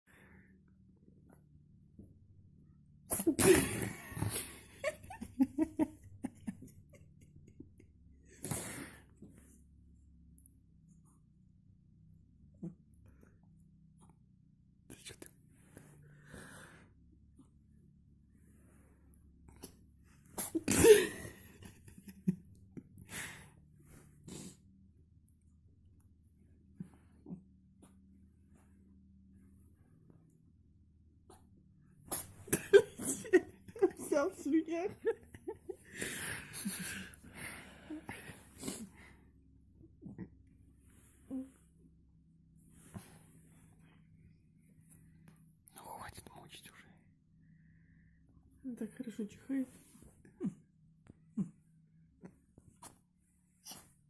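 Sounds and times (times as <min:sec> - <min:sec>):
cat sneezing: 0:03.1 - 0:03.9, 0:20.4 - 0:21.0, 0:32.1 - 0:33.1.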